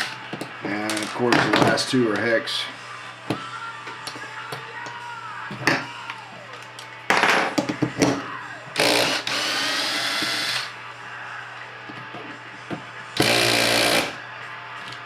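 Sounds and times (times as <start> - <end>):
power tool motor whirring: 8.8 - 10.7, 13.2 - 14.2.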